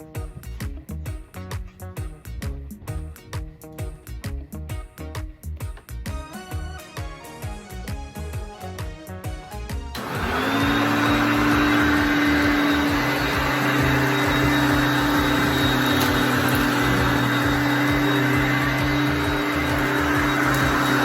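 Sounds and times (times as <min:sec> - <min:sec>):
background music: 0:00.0 - 0:21.0
vacuum cleaner motor whining: 0:10.0 - 0:21.0.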